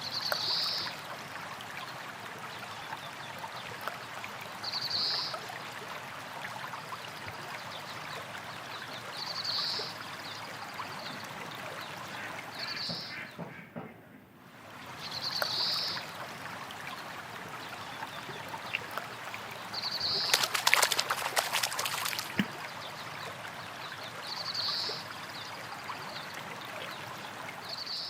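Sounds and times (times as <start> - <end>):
water trickling: 0.0 - 13.3, 14.5 - 28.0
loud water splashing: 16.0 - 22.7.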